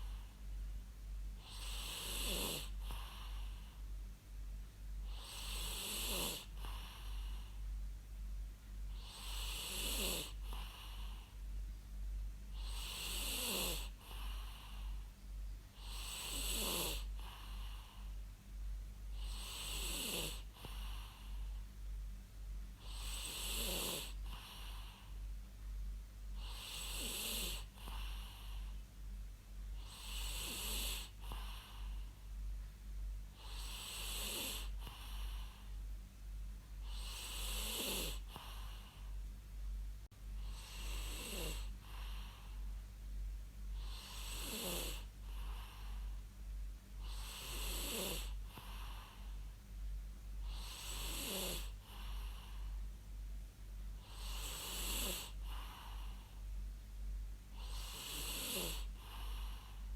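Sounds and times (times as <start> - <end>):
constant low hum: 0.0 - 59.9
person snoring: 1.4 - 3.6, 5.1 - 7.5, 9.0 - 11.2, 12.6 - 15.0, 15.8 - 18.1, 19.2 - 21.4, 22.8 - 25.0, 26.4 - 28.6, 29.8 - 32.0, 33.4 - 35.6, 36.8 - 39.1, 40.4 - 42.6, 43.8 - 46.0, 47.0 - 49.3, 50.4 - 52.7, 54.0 - 56.2, 57.6 - 59.8.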